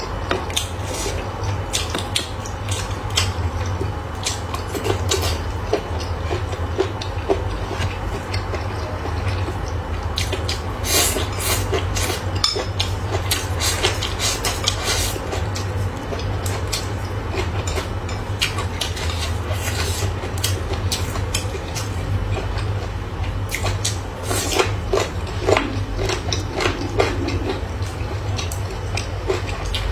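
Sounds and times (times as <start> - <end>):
low hum: 24.0 - 29.3.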